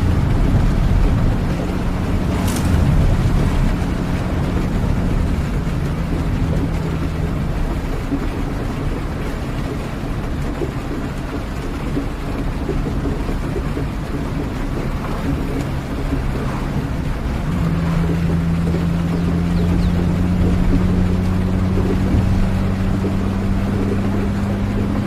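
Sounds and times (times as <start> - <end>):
rain: 0.0 - 25.0
vehicle engine drone: 0.0 - 25.0.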